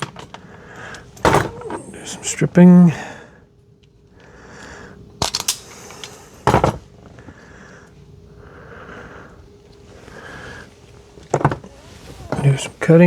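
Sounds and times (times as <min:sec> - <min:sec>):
wire stripper snap: 0:05.2 - 0:06.2
wire strippers clicking: 0:05.2 - 0:06.6
handling rustle: 0:09.5 - 0:13.0.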